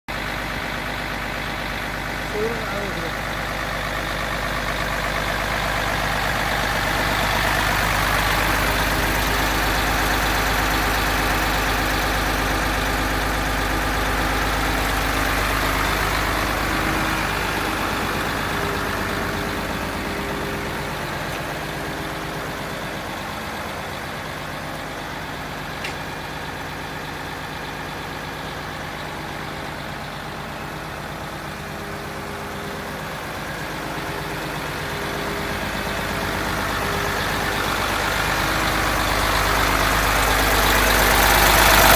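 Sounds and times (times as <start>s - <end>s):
diesel truck engine idling: 0.1s - 41.9s
short click: 25.8s - 26.0s.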